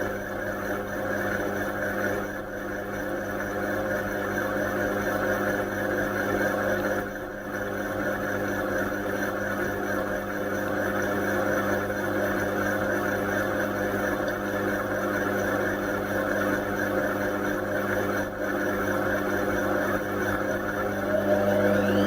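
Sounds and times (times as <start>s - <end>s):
washing machine running: 0.0s - 22.0s
drum motor whine: 19.9s - 22.0s.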